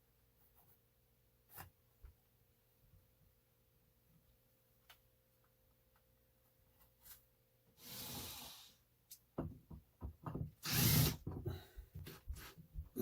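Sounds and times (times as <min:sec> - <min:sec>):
power drill running: 0:10.6 - 0:11.2.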